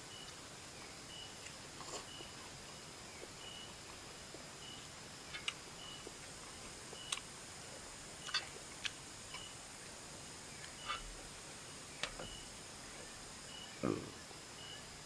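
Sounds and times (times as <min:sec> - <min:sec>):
faint high chirps: 0:00.0 - 0:02.4, 0:03.0 - 0:03.8, 0:04.6 - 0:06.3, 0:06.9 - 0:07.2, 0:09.3 - 0:09.6, 0:10.4 - 0:15.0
steady hiss: 0:00.0 - 0:15.0.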